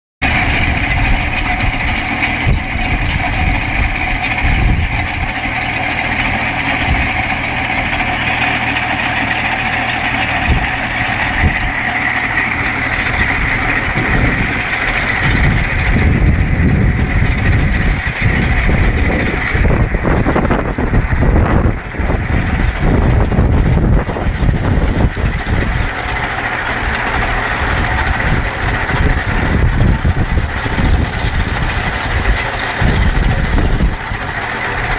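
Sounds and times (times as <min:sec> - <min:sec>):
engine running: 0:00.2 - 0:34.9
high whine: 0:00.2 - 0:34.9.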